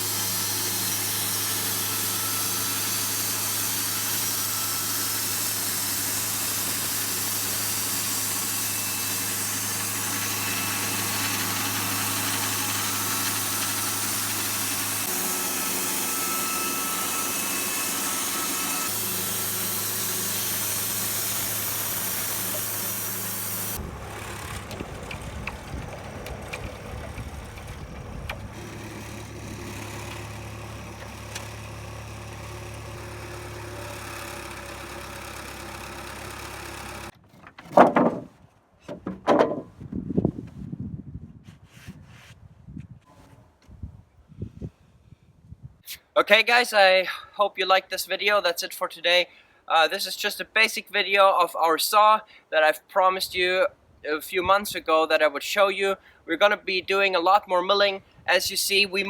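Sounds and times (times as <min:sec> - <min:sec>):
band sawmill running: 0:00.0 - 0:37.1.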